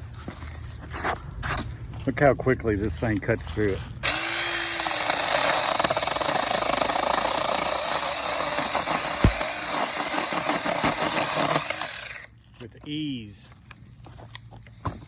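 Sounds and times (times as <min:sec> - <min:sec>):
mini chainsaw cutting wood: 0:04.0 - 0:12.3
sharp knock: 0:09.2 - 0:09.5.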